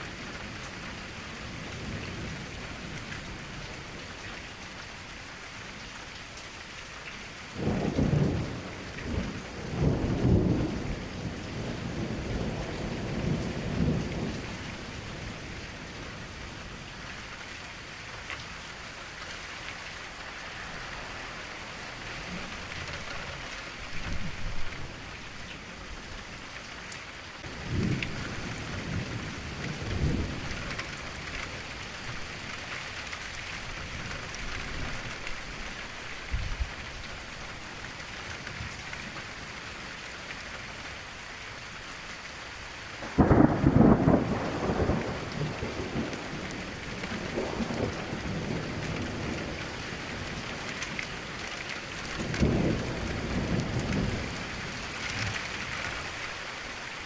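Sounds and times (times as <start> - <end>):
steady rain falling: 0.0 - 57.0
thunder rumbling: 7.6 - 16.9, 27.4 - 32.7, 43.0 - 56.5.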